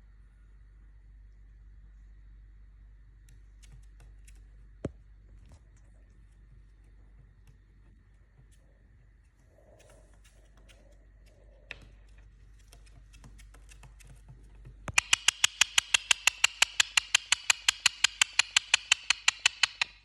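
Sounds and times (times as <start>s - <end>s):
parakeet sharp clicking calls: 14.9s - 20.0s.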